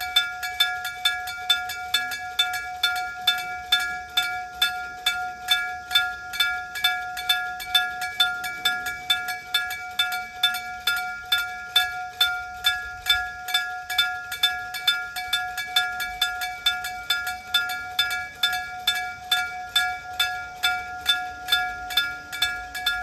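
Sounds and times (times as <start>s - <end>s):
level crossing bell ringing: 0.0s - 23.0s.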